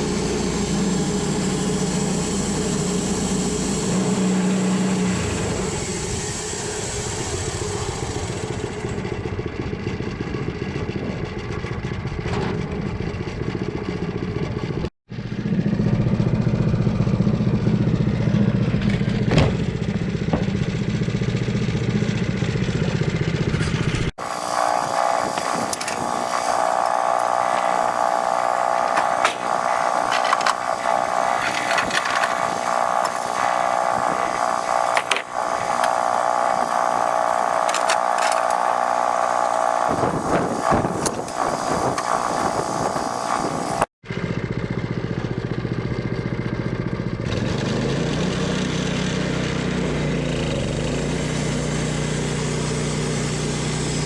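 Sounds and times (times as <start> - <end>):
high-pitched mechanical whine: 0.0 - 11.1, 23.5 - 43.9
engine running: 0.0 - 54.0.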